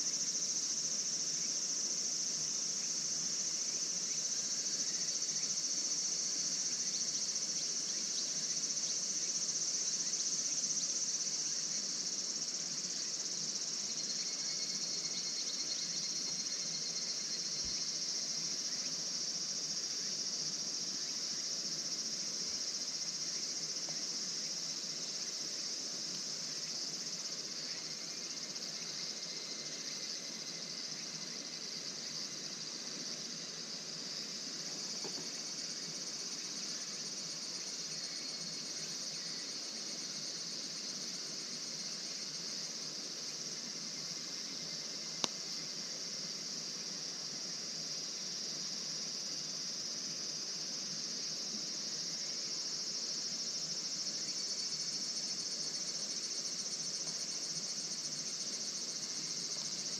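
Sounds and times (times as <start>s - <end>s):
crickets trilling: 0.0s - 59.9s.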